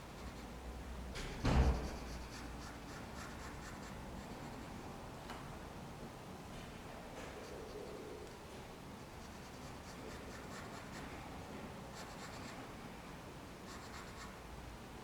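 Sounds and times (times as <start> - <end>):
pencil scratching on paper: 1.5 - 4.7, 9.0 - 11.1, 12.0 - 12.5, 13.7 - 14.3.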